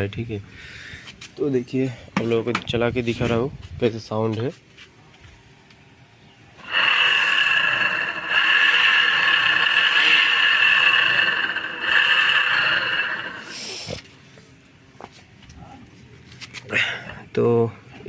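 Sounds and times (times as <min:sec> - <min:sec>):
electric motor whining and grinding: 0:06.6 - 0:14.0.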